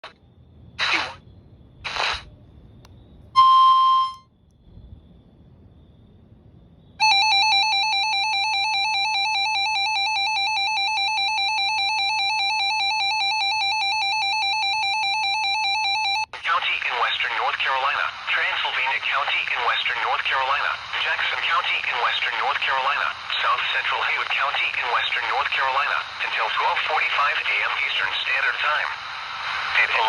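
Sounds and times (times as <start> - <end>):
short hissing bursts: 1.9 - 2.2
steady beep: 3.4 - 4.2
warbling alarm tone: 7.0 - 16.3.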